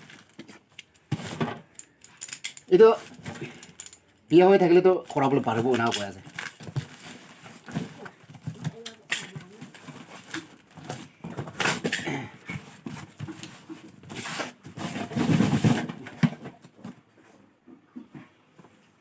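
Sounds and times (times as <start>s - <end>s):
packaging rustling and tearing: 0.0s - 1.4s, 5.6s - 11.9s.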